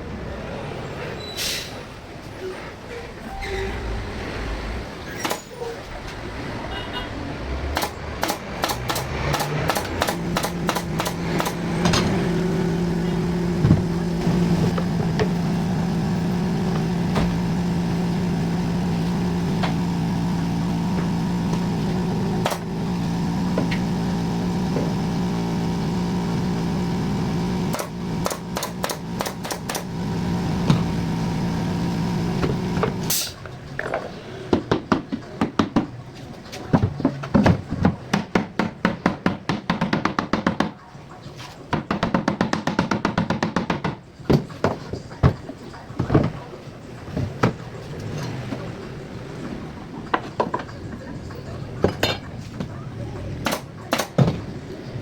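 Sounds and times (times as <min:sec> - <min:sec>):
sharp clicks and knocks: 0:07.8 - 0:12.8, 0:13.5 - 0:31.2
power tool motor running: 0:08.2 - 0:33.1.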